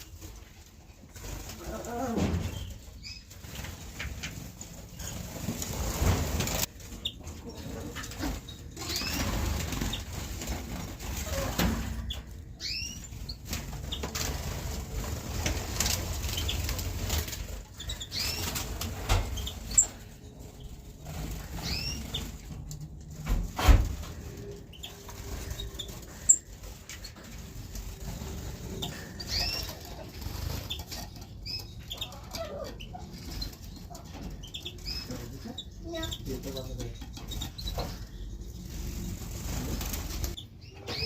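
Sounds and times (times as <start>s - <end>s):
wings fluttering: 0.0s - 41.0s
finches chirping: 12.0s - 14.1s, 17.7s - 18.6s, 21.4s - 22.4s, 28.8s - 38.9s.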